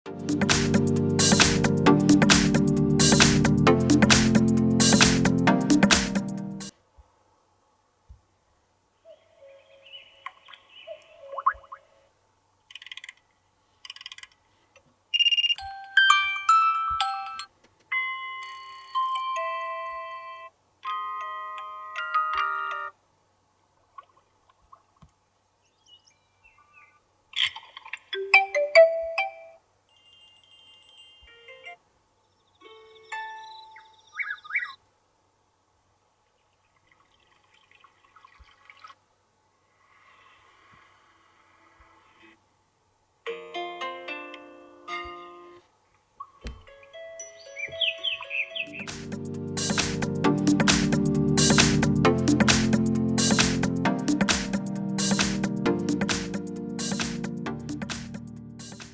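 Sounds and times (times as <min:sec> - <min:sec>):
electronic alarm melodies and chimes: 0:47.2 - 0:58.9.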